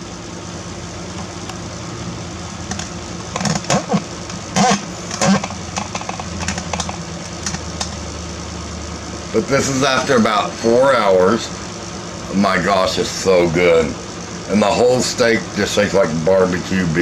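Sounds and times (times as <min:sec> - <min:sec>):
low mechanical hum: 0:00.0 - 0:17.0
clatters and knocks: 0:02.6 - 0:08.0.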